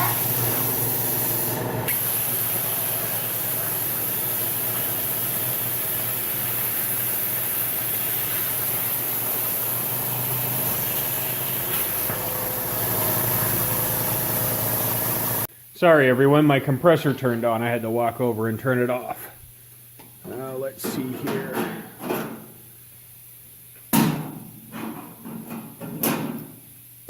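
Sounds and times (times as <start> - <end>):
air compressor running: 0.0 - 15.6.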